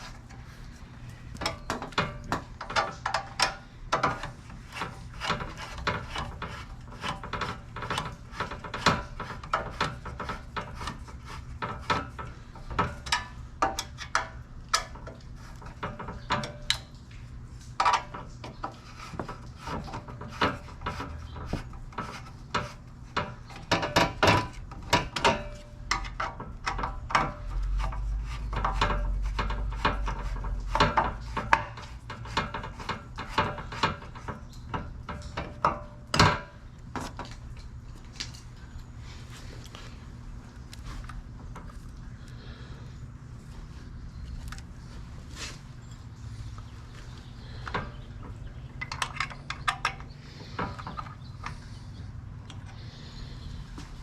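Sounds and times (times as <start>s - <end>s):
rasping strokes of hand filing: 4.6s - 12.0s.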